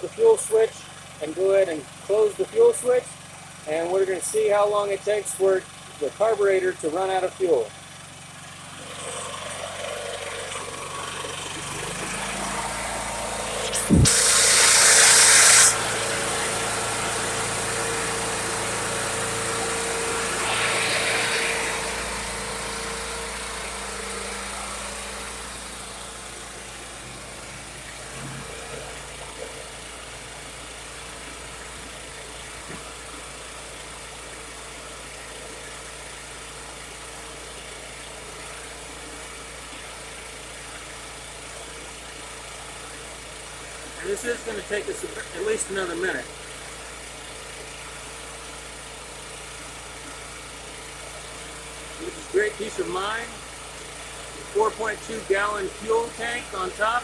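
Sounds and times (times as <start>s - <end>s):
generator engine running: 0.0s - 57.0s
brief rush of noise: 13.6s - 15.8s.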